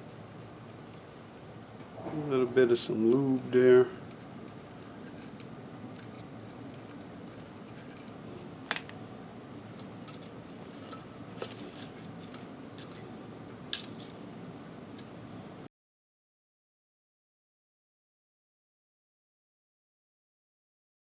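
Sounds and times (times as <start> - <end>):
low background hum: 0.0 - 15.7.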